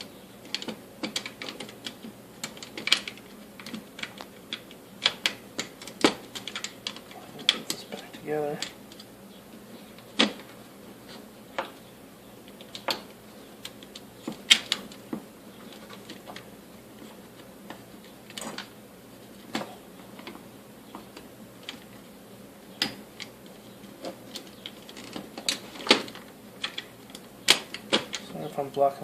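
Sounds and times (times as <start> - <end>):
plastic and metal parts clicking: 0.4 - 7.8.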